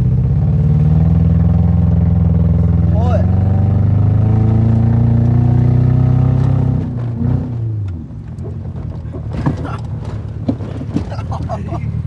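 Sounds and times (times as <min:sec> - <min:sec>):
car engine revving: 0:00.0 - 0:12.0
faint engine knocks: 0:04.5 - 0:12.0.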